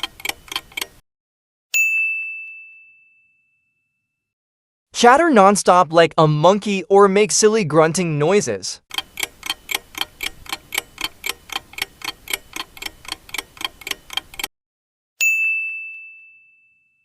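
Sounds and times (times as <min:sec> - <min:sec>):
clock ticking rapidly: 0:00.0 - 0:01.0, 0:08.9 - 0:14.5
bright bell ding: 0:01.8 - 0:04.0, 0:15.2 - 0:17.0.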